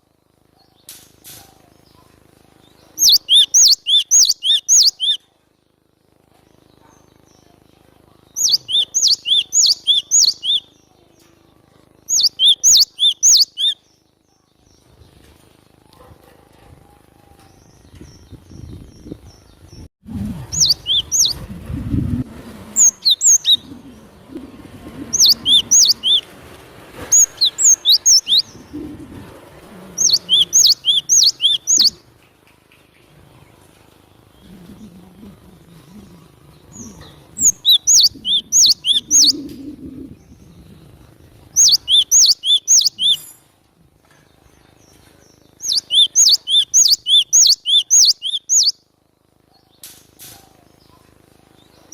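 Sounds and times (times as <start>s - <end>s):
bird singing high sharp notes: 3.0s - 5.2s, 8.4s - 10.8s, 12.1s - 13.9s, 20.5s - 21.4s, 22.7s - 23.7s, 25.1s - 26.2s, 27.1s - 28.6s, 30.0s - 32.0s, 36.7s - 39.4s, 41.6s - 43.3s, 45.6s - 48.8s.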